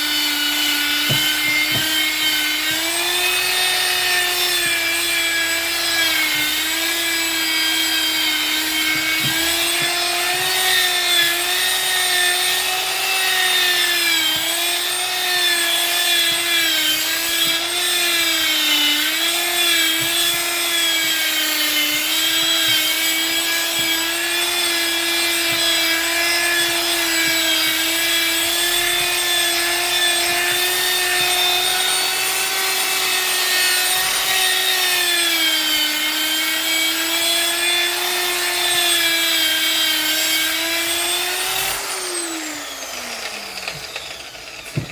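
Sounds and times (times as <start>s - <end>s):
power tool motor whine: 0.0s - 44.9s
tool rasping on wood: 0.0s - 44.9s.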